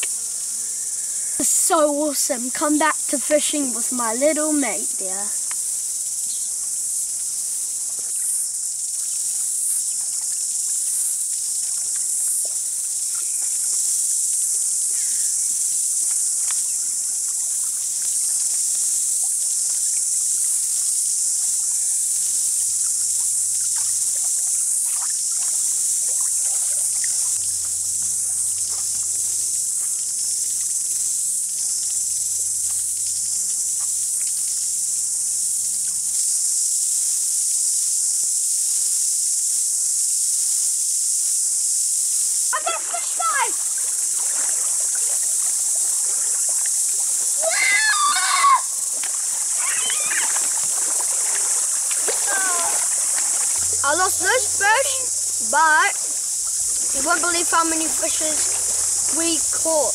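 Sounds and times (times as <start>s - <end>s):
crickets and insects chirring: 0.0s - 59.9s
faint low hum: 25.3s - 36.0s, 52.1s - 59.9s.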